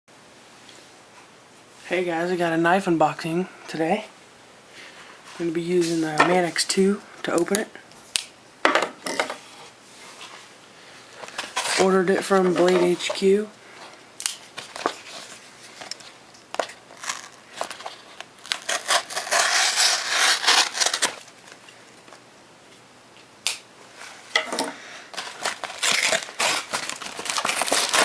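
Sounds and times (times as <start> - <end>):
packaging crinkling: 14.3 - 21.7, 25.1 - 28.0
knife cutting package: 16.6 - 21.3, 25.1 - 28.0.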